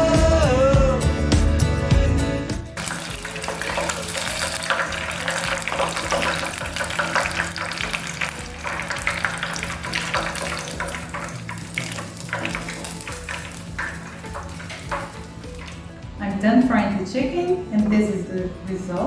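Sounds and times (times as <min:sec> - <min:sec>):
chicken deep-frying in oil: 0:02.8 - 0:16.0.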